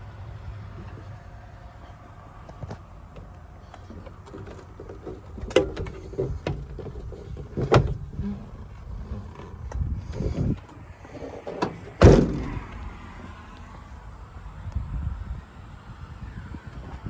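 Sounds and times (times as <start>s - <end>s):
metal toolbox doors clunking: 2.6s - 12.8s
loud metal bangs: 11.6s - 13.0s.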